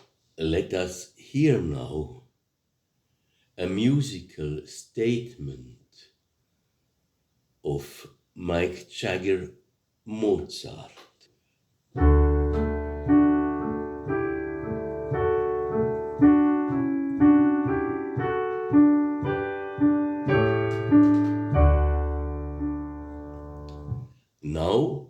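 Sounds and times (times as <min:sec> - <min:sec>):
piano keyboard melody: 0:12.0 - 0:24.0.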